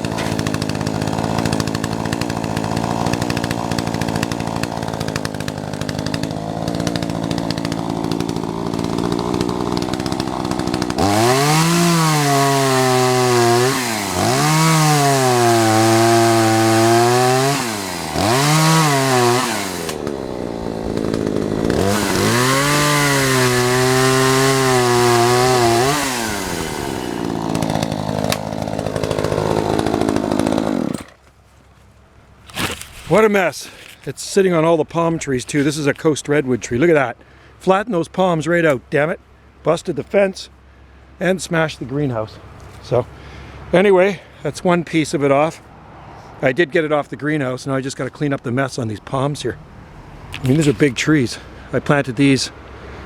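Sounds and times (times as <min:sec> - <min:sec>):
chainsaw cutting wood: 0:00.0 - 0:31.4, 0:32.4 - 0:34.1, 0:50.2 - 0:51.6.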